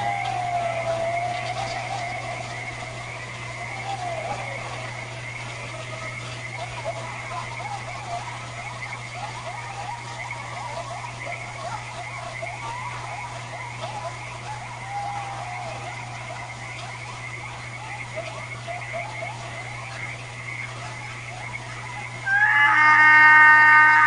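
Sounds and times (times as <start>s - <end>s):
frogs croaking: 0.0s - 24.0s
steady low hum: 0.0s - 24.0s
loud pitched animal call: 22.2s - 24.0s.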